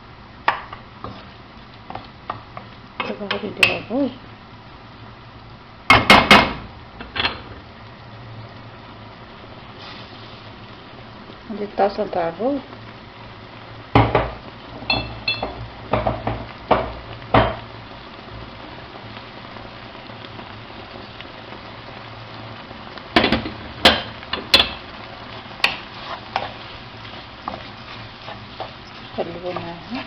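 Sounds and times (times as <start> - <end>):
rice sizzling in hot oil: 0.0 - 30.0
utensil scraping a frying pan: 24.4 - 30.0.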